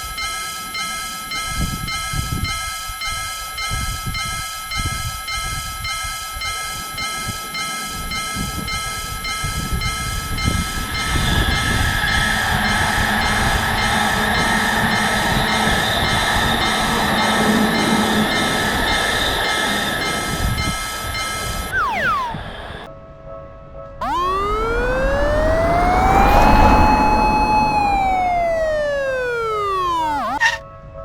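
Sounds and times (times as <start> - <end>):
railroad crossing alarm ringing: 3.6 - 22.9, 24.0 - 30.4
passing train rumble: 10.8 - 20.6, 24.0 - 29.7
loud rushing noise: 24.0 - 30.4.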